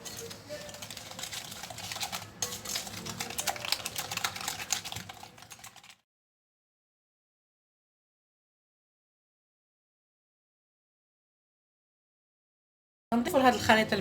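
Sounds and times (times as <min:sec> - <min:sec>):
whisk clicking against bowl: 0:00.0 - 0:06.0.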